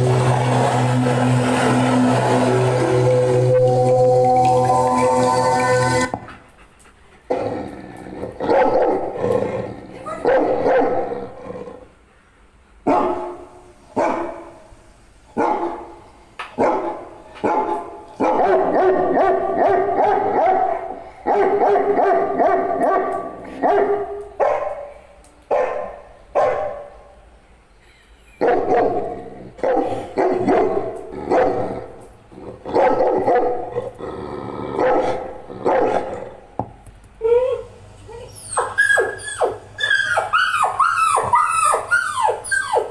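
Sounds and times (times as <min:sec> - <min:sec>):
dog barking: 0:08.4 - 0:09.1, 0:10.1 - 0:11.1, 0:12.8 - 0:14.6, 0:15.4 - 0:15.9, 0:16.6 - 0:24.9, 0:25.5 - 0:27.0, 0:28.4 - 0:31.7, 0:32.7 - 0:33.7, 0:34.8 - 0:36.2.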